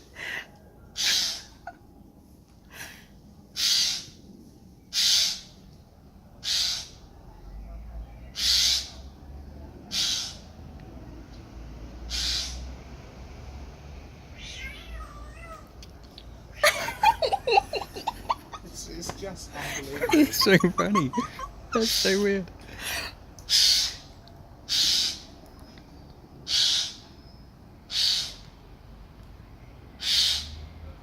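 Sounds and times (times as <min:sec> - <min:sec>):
bird giving meow-like calls: 0:03.6 - 0:04.2, 0:09.9 - 0:10.4, 0:12.1 - 0:12.6, 0:27.9 - 0:28.4.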